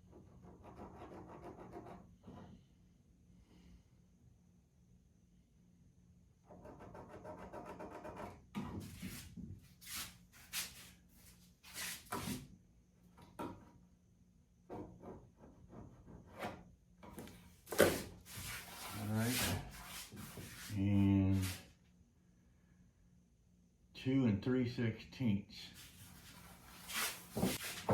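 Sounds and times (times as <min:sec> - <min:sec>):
scraping strokes on wood: 0:07.6 - 0:12.4, 0:17.7 - 0:21.6, 0:25.8 - 0:27.9.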